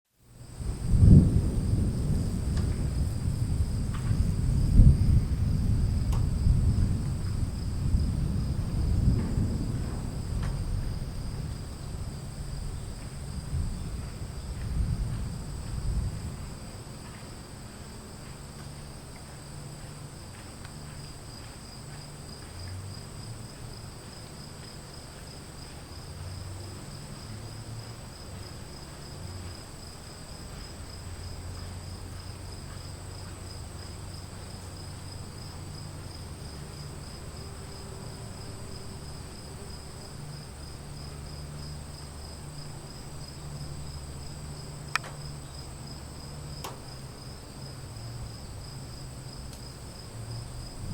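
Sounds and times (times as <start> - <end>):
insects chirring: 0.2 - 50.9
distant thunder rumbling: 0.5 - 16.9.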